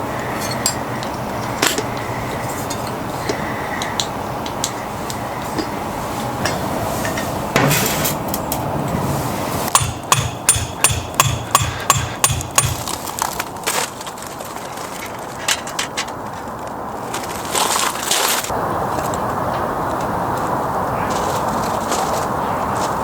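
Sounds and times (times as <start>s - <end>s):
rapid hammering: 9.7s - 13.0s.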